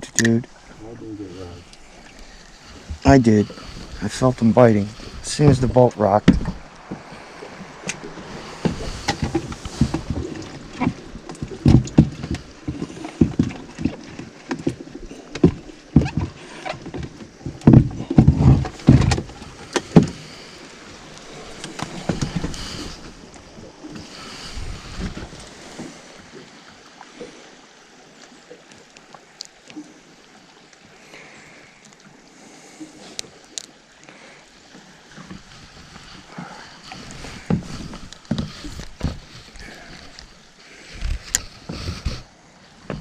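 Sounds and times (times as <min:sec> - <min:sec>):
soft steady hiss: 0:00.0 - 0:08.6
water knocking against boat hull: 0:05.0 - 0:20.5, 0:37.1 - 0:40.1.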